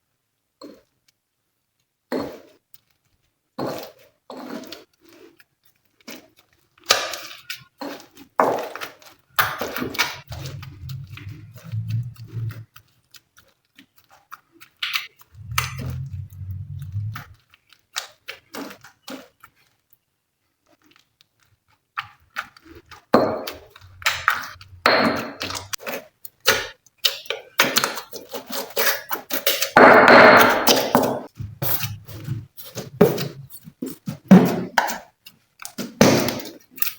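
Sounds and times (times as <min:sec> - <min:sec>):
slime clicking and crackling: 0:02.2 - 0:36.9
low hum: 0:10.3 - 0:12.6, 0:15.4 - 0:17.4.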